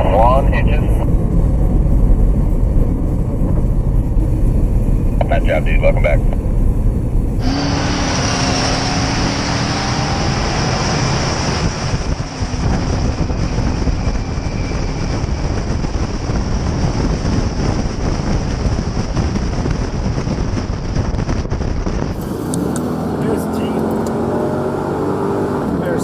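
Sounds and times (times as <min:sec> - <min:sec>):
jet engine roar and whine: 0:00.0 - 0:06.5, 0:07.4 - 0:19.5
wind on microphone: 0:00.0 - 0:23.2.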